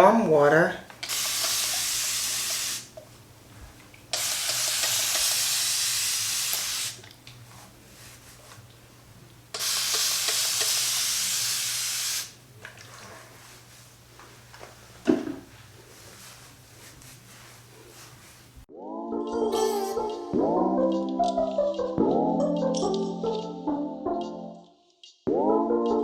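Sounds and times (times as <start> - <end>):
spray bottle misting: 1.0 - 2.9, 4.2 - 7.0, 9.6 - 12.4.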